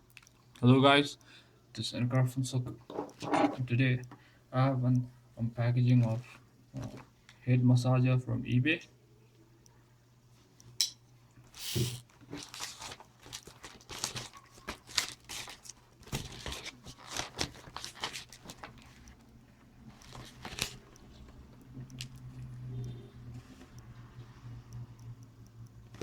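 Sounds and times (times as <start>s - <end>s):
parcel packaging crinkling: 11.5s - 22.1s.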